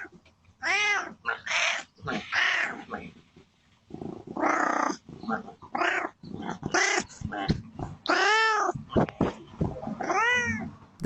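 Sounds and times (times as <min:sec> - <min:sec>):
cat meowing: 0:00.0 - 0:02.8, 0:05.7 - 0:08.8, 0:09.9 - 0:10.7.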